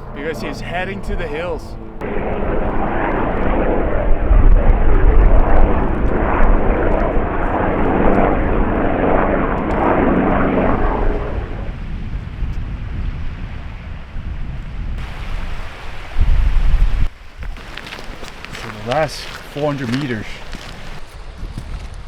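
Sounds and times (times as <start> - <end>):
helicopter flying by: 0.0 - 11.8.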